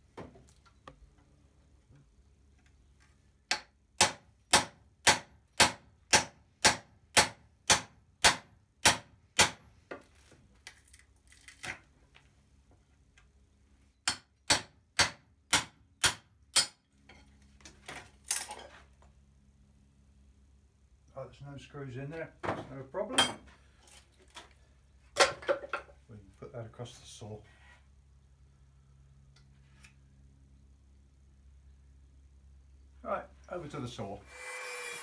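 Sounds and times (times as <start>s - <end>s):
hammer striking wood: 3.5s - 9.7s, 14.1s - 16.8s.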